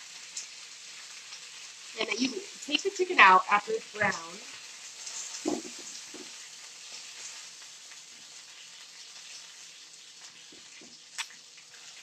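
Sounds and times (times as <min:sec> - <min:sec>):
chicken sizzling in oil: 0:00.0 - 0:12.0.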